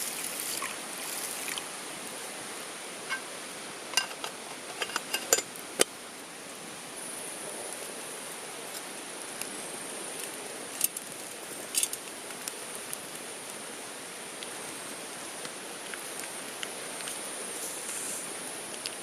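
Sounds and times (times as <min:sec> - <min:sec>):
stream water rushing: 0:00.0 - 0:06.9.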